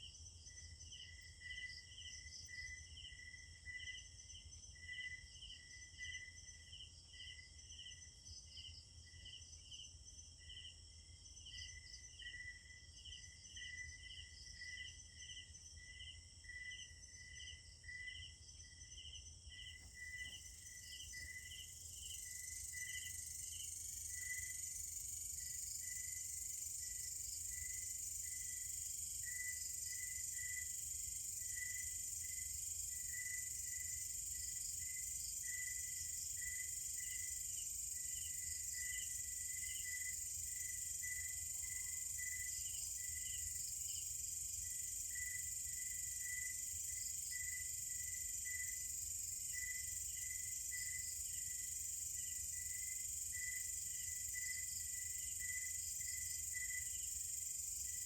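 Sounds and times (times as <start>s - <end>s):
crickets chirping: 0.0s - 58.0s
high-pitched insect trill: 11.4s - 58.0s.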